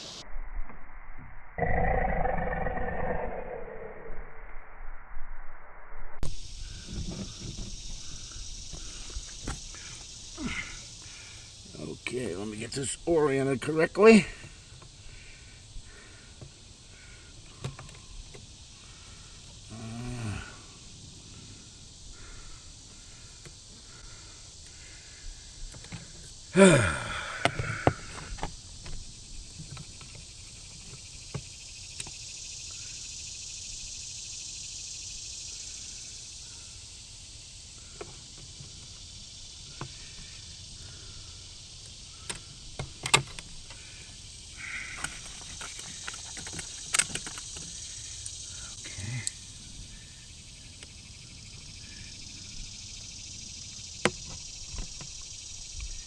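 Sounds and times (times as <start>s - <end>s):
steady hiss: 0.0s - 1.1s, 6.2s - 56.0s
hands and tools clicking on wires: 45.0s - 47.7s.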